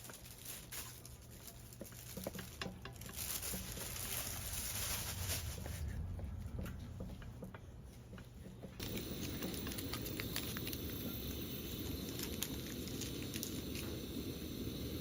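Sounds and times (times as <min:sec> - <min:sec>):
food sizzling in a hot pan: 0:08.8 - 0:15.0.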